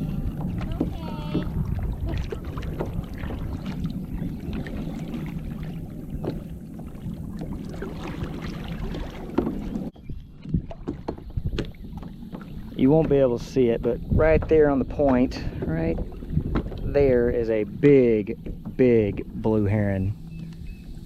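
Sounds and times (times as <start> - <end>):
wind rumbling on microphone: 0.0 - 21.0.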